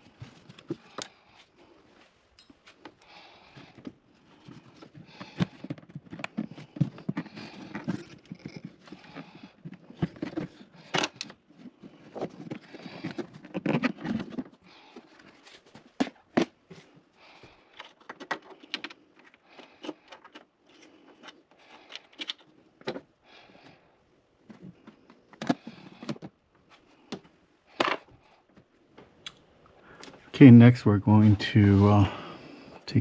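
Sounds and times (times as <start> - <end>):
scraping and rustling: 3.6 - 23.1.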